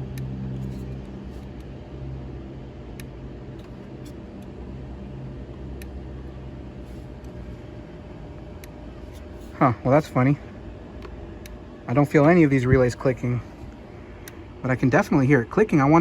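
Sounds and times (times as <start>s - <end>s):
low hum: 0.0s - 16.0s.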